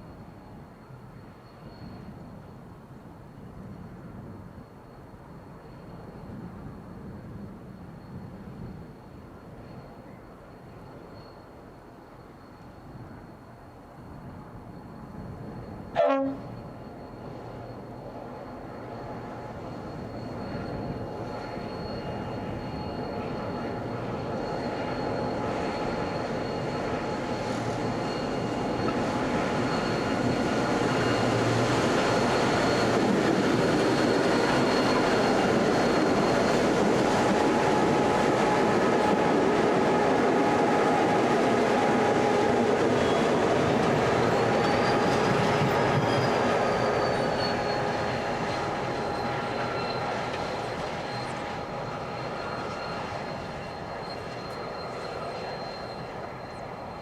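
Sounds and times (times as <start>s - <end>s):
diesel locomotive engines: 0.0s - 57.0s
high thin wheel squeal: 14.9s - 57.0s.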